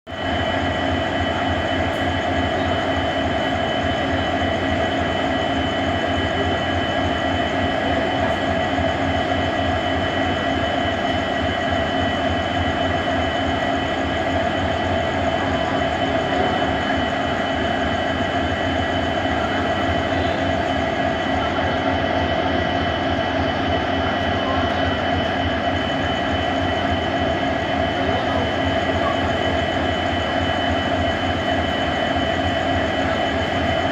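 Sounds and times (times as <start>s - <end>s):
diesel locomotives idling: 0.1s - 33.9s.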